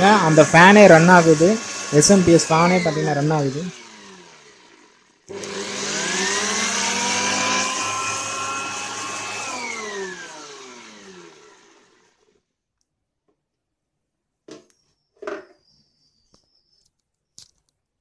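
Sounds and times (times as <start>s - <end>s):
electric air blower whining: 0.0s - 12.4s.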